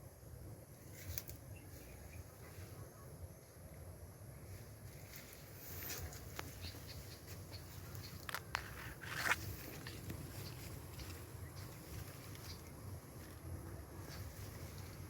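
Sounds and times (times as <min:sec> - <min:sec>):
low steady rumble: 0:00.0 - 0:15.0.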